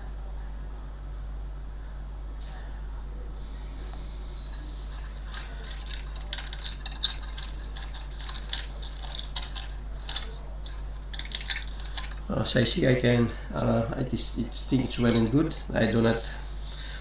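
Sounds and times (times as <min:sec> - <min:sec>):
steady low hum: 0:00.0 - 0:17.0
light clicks and clinks on metal: 0:04.4 - 0:12.9.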